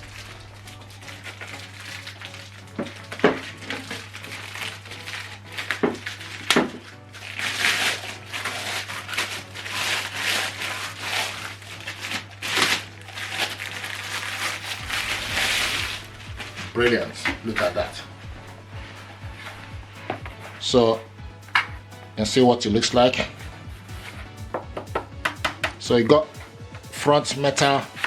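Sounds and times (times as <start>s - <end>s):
low hum: 0.0s - 7.0s, 13.9s - 25.2s
packaging crinkling: 0.0s - 22.4s
sharp knocks: 24.2s - 25.9s.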